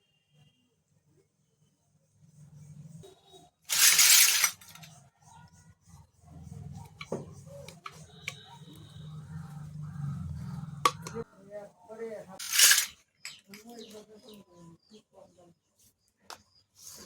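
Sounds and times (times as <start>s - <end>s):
toy pieces clicking and tapping: 3.7s - 4.9s.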